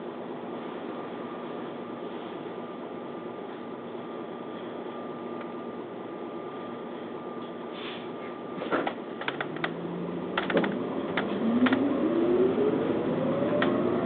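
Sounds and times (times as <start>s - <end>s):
sharp clicks and knocks: 8.8s - 9.8s, 10.4s - 11.8s
bus engine rising in pitch: 9.4s - 14.0s.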